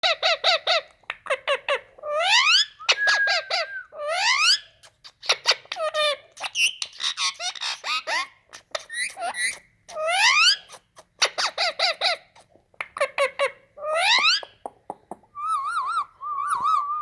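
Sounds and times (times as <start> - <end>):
parakeet calling: 1.5 - 12.4.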